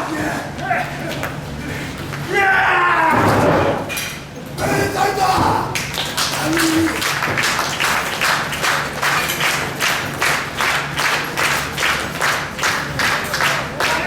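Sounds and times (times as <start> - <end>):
crowd clapping in rhythm: 5.7 - 14.0.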